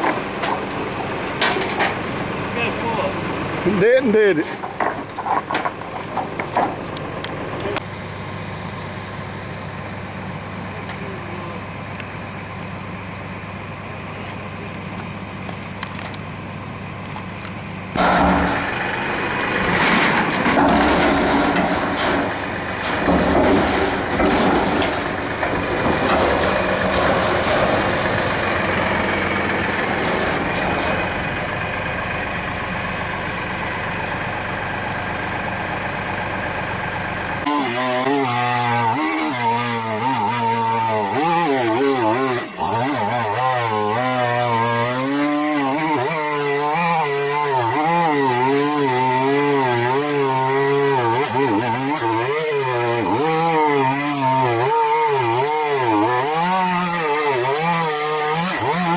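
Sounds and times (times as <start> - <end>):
tractor engine running: 0.0 - 37.5
clattering with sharp clicks: 18.0 - 31.5.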